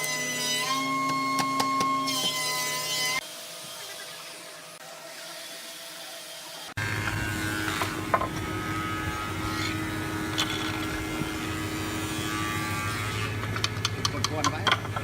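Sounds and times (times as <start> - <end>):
steady motor hum: 6.0 - 15.0.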